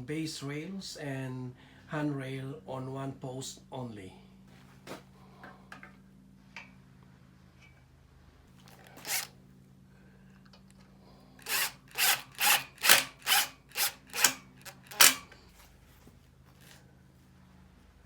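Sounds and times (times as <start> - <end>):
power drill driving screws: 8.7 - 9.3, 11.4 - 15.4.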